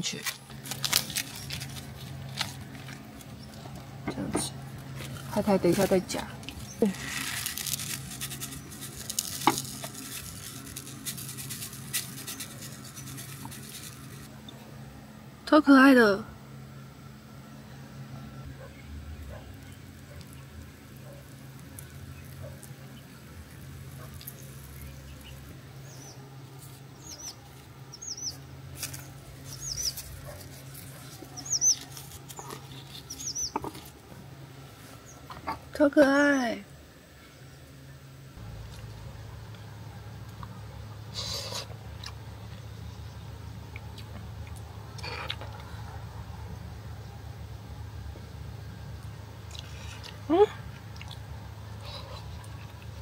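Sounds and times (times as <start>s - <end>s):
steady low hum: 0.0s - 53.0s
utensil stirring rice in a bowl: 6.6s - 14.3s
small bird chirping: 18.6s - 26.2s, 27.0s - 33.7s.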